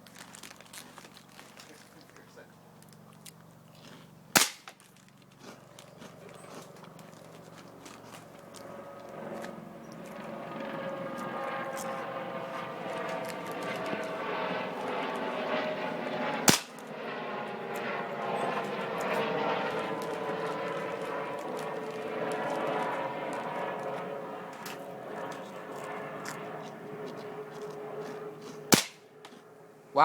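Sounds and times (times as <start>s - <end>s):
engine drone: 0.0s - 30.0s
air rifle shot: 4.4s - 4.7s, 16.4s - 16.9s, 28.7s - 29.1s.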